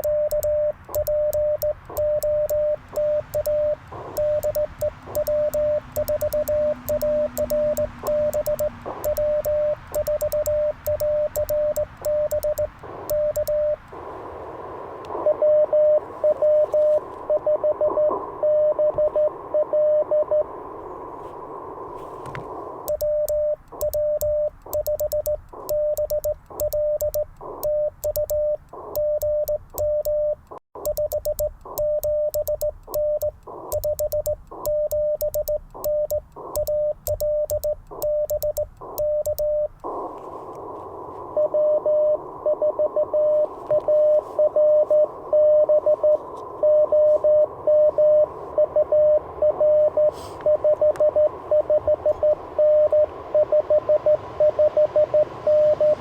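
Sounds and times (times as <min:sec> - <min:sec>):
morse code tone: 0:00.0 - 0:13.8, 0:15.2 - 0:20.4, 0:22.7 - 0:40.1, 0:41.4 - 0:56.0
morse key contacts clicking: 0:00.0 - 0:14.0, 0:22.9 - 0:39.9
radio band hiss: 0:00.8 - 0:19.5, 0:20.2 - 0:22.9, 0:32.9 - 0:33.9, 0:35.8 - 0:37.0, 0:38.7 - 0:48.6, 0:49.8 - 0:50.7.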